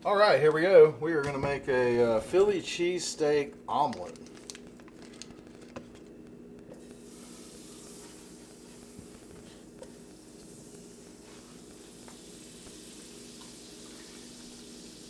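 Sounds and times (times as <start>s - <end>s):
butter sizzling in a skillet: 6.8s - 15.0s.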